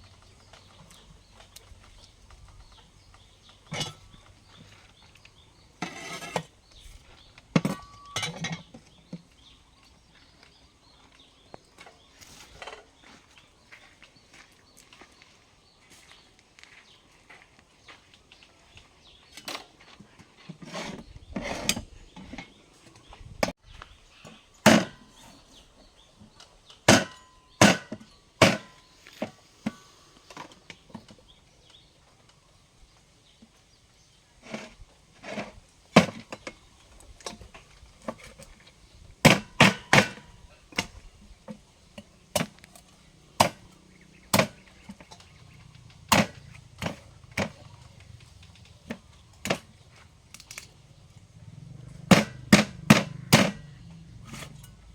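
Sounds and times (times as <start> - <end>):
blade chopping wood: 26.9 - 28.8, 39.2 - 41.0, 42.3 - 42.6, 43.4 - 45.1, 46.1 - 47.6, 52.0 - 53.8.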